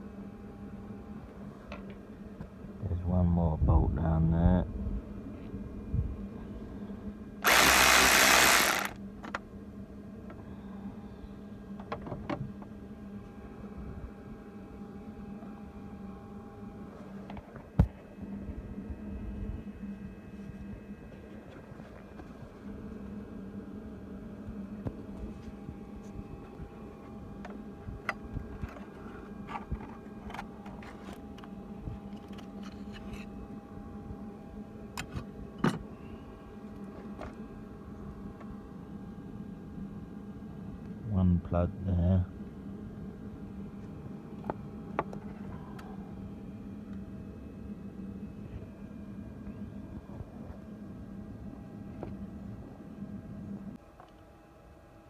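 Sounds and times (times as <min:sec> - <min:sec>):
steady low hum: 0:00.1 - 0:09.0
power driver undoing bolt: 0:07.4 - 0:09.0.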